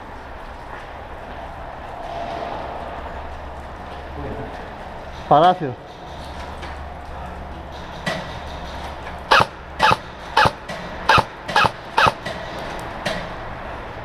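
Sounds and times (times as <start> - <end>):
airsoft gun shots: 9.3 - 12.2.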